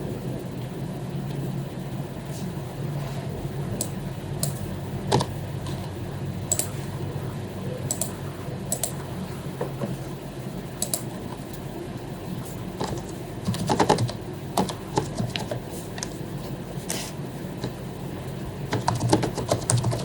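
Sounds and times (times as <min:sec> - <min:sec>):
steady low hum: 0:00.0 - 0:20.0
computer mouse clicks: 0:03.8 - 0:05.3, 0:06.5 - 0:06.8, 0:07.8 - 0:09.0, 0:10.8 - 0:11.6
keyboard key clicks: 0:06.5 - 0:06.7.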